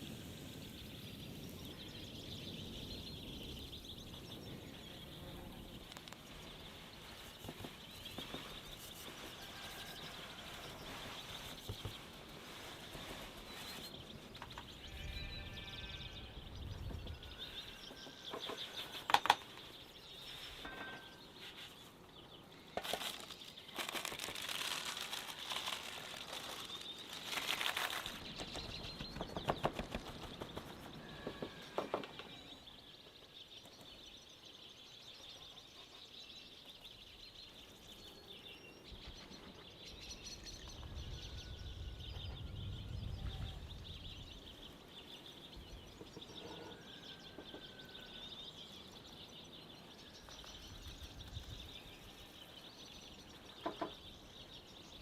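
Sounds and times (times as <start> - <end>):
birds chirping: 0.0 - 55.0
rustling and handling noise: 5.9 - 14.6, 18.4 - 29.0.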